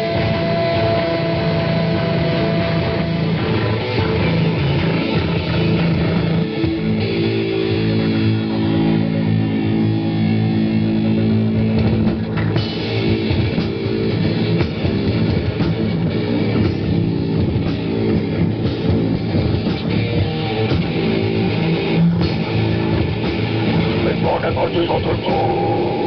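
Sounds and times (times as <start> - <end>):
guitar chords ringing: 0.0 - 26.0
drum kit playing: 11.2 - 26.0.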